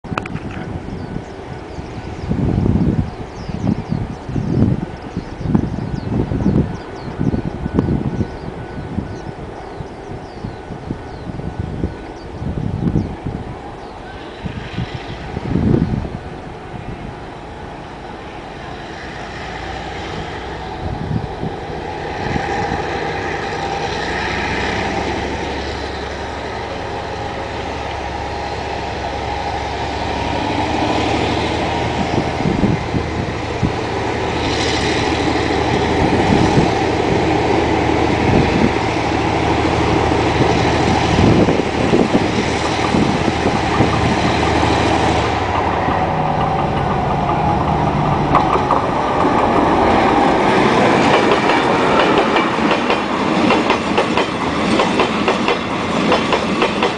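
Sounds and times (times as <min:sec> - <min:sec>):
locomotive engine drone: 0:00.0 - 0:56.9
train wheels knocking on rails: 0:30.7 - 0:56.9.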